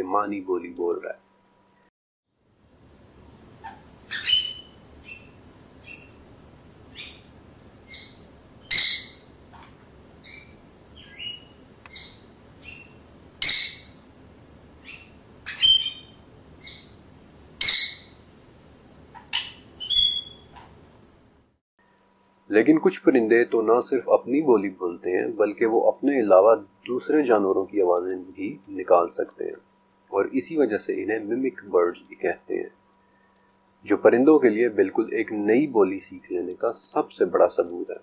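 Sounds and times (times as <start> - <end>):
birds singing a duet: 3.0 - 14.1, 14.8 - 18.3
faint steady hiss: 20.8 - 38.0.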